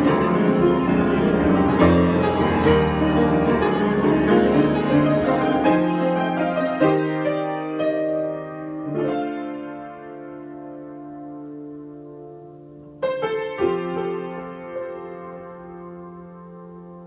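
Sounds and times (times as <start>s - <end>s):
solo piano chords: 0.0s - 17.0s.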